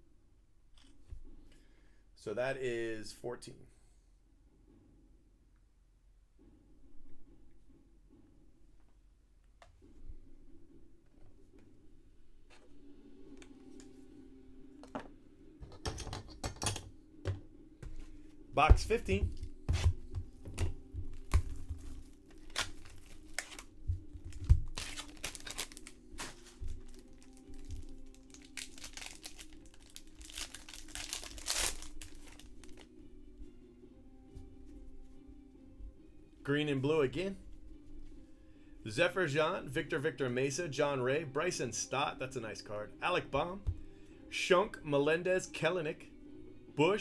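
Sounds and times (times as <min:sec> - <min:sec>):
cardboard packs crinkling and rustling: 0:20.5 - 0:32.9.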